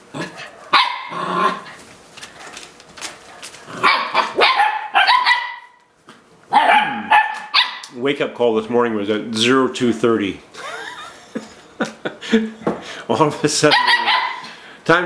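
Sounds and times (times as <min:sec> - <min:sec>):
puppies barking and yipping: 0:00.5 - 0:01.9, 0:03.4 - 0:05.8, 0:06.5 - 0:08.0, 0:13.6 - 0:14.6.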